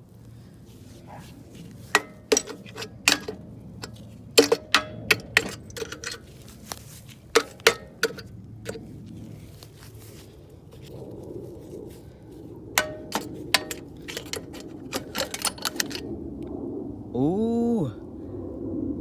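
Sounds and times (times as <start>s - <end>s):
hammer striking metal: 2.0s - 6.2s, 7.4s - 8.8s, 12.8s - 16.0s.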